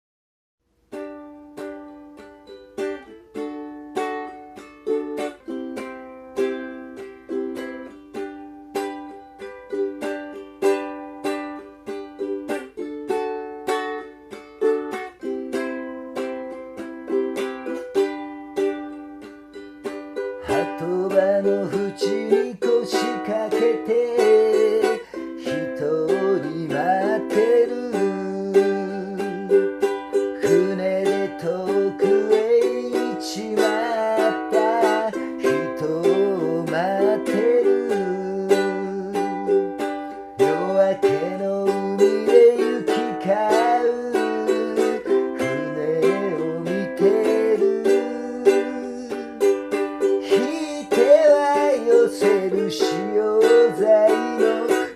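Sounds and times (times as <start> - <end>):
ukulele strumming: 0.8 - 54.9
person singing: 20.3 - 54.9.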